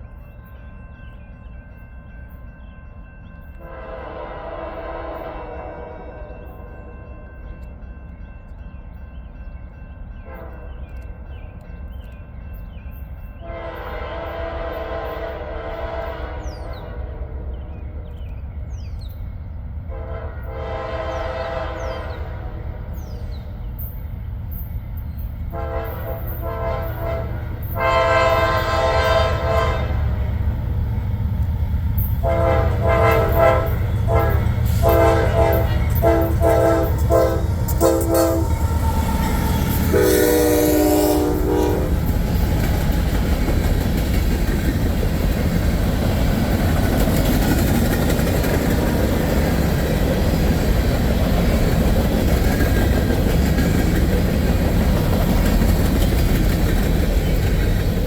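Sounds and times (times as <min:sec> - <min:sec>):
train wheels on rails: 0:00.0 - 0:58.0
locomotive chime horn: 0:01.8 - 0:08.0, 0:10.1 - 0:11.2, 0:13.3 - 0:18.0, 0:19.8 - 0:23.9, 0:25.5 - 0:43.2
wheels clacking over rail joints: 0:25.6 - 0:58.0.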